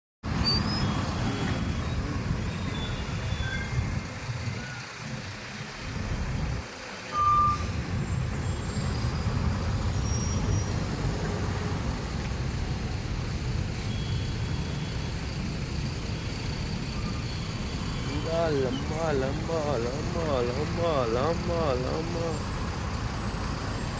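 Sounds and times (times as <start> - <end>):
truck engines rumbling: 0.2 - 23.9
short high beeps: 7.1 - 7.7.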